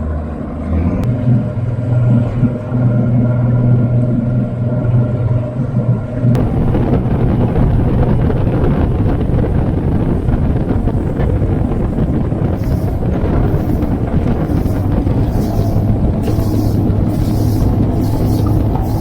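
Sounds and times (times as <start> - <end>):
wind buffeting microphone: 5.9 - 19.0
short high hissing hits: 12.6 - 19.0.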